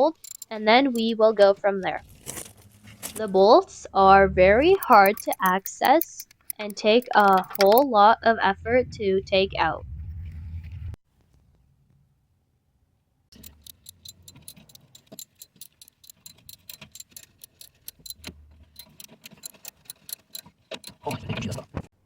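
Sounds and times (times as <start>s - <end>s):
ratchet wrench clicking: 0.0s - 1.1s, 4.7s - 7.8s, 13.4s - 21.1s.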